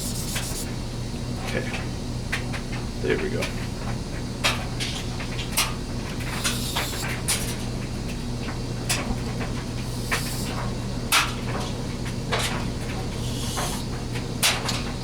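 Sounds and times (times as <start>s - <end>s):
knife scraping on whetstone: 0.0s - 0.7s, 6.4s - 7.1s, 9.8s - 10.6s, 13.2s - 14.0s.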